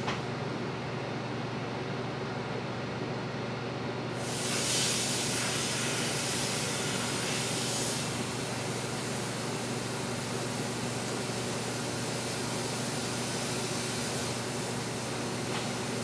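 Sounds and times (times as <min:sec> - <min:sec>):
microwave oven humming: 0:00.0 - 0:16.0
loud steam hiss: 0:04.2 - 0:16.0.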